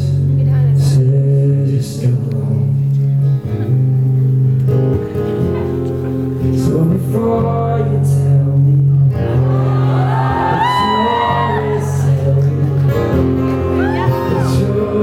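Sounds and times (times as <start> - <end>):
bass guitar: 0.0 - 15.0
guitar: 0.0 - 15.0
person singing: 6.5 - 15.0.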